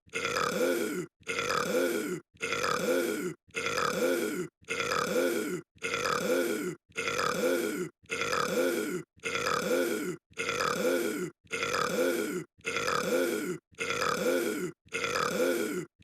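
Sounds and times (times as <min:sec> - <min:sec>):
person burping: 0:00.1 - 0:16.0.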